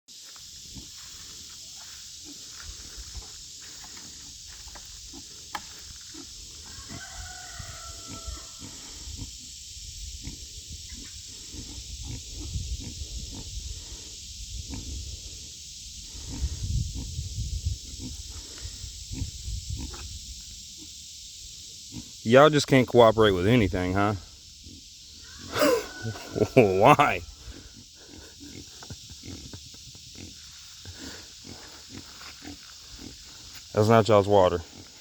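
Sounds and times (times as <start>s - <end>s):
pigs grunting: 1.8s - 9.5s, 10.1s - 15.4s, 16.0s - 20.0s, 25.4s - 35.0s.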